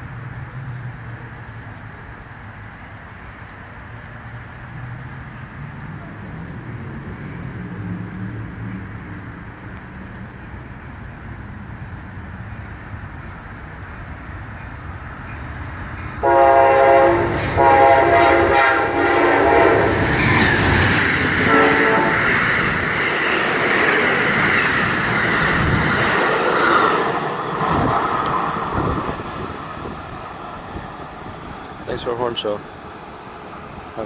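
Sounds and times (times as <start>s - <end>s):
train rumble and wheel clatter: 0.0s - 34.0s
train horn blasts: 16.2s - 20.4s, 21.4s - 22.4s.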